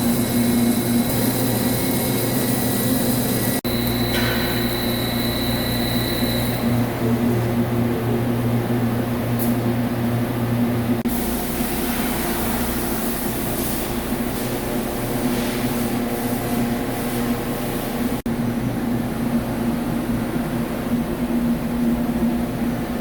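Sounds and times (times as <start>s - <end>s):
lathe machine hum: 0.0s - 9.2s.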